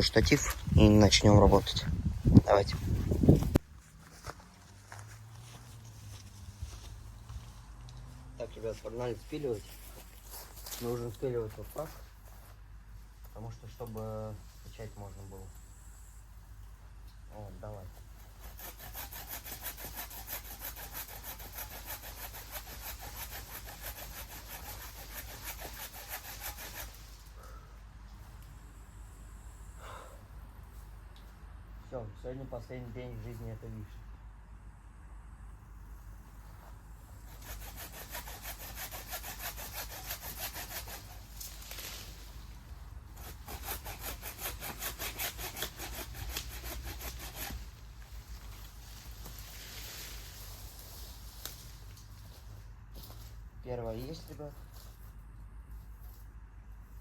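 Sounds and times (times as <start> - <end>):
hand saw cutting tree trunk: 18.0 - 27.5, 37.2 - 50.4.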